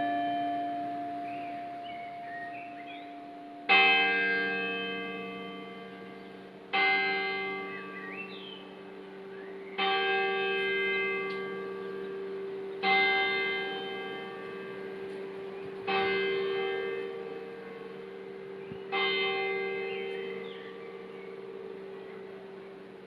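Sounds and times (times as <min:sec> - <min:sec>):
church bell striking: 0:00.0 - 0:23.0
low hum from bells: 0:00.0 - 0:23.0.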